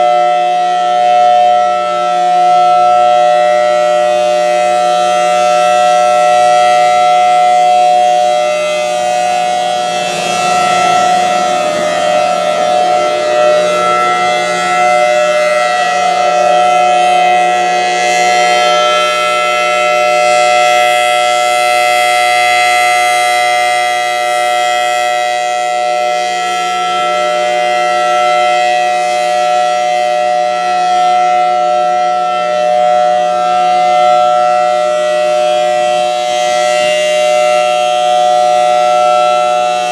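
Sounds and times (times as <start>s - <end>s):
warning siren wail: 0.0s - 39.9s.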